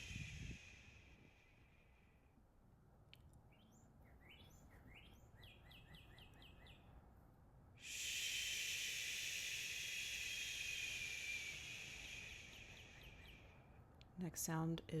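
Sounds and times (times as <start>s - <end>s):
person exhaling shh: 0.0s - 1.6s, 7.8s - 13.2s
songbird chirping: 3.4s - 7.0s, 11.1s - 14.1s.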